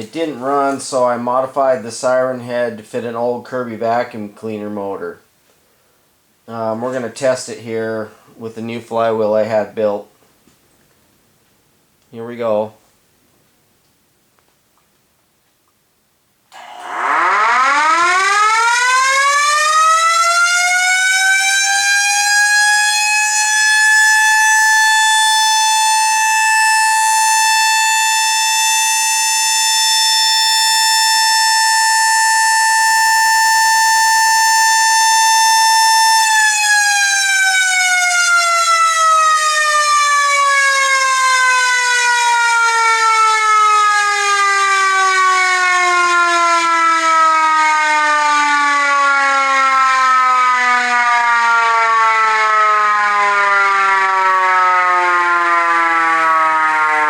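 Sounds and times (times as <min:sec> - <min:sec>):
mechanical siren wailing: 0:16.5 - 0:57.0.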